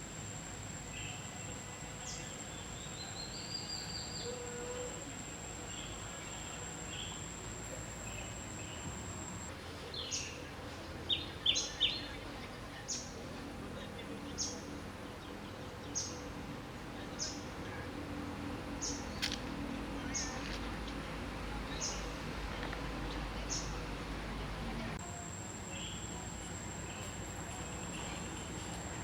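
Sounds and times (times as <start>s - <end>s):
thin high whine: 0.0s - 9.8s.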